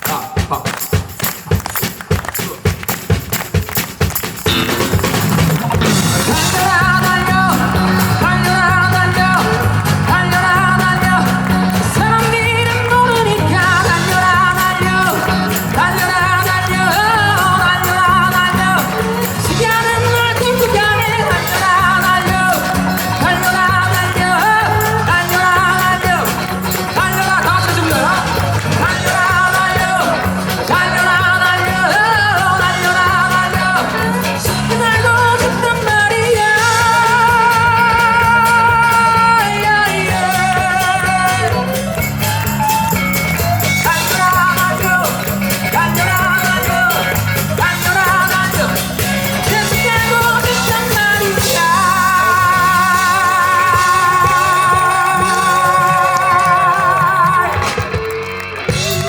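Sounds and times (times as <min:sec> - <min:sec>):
bass and drum beat: 0:00.0 - 0:59.0
guitar: 0:00.0 - 0:59.0
voice singing vibrato notes: 0:05.8 - 0:57.8.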